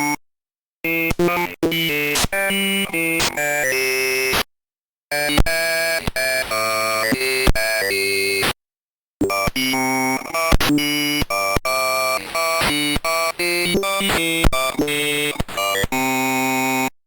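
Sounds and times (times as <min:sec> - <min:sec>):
snippets of synthesizer music: 0:00.9 - 0:04.4.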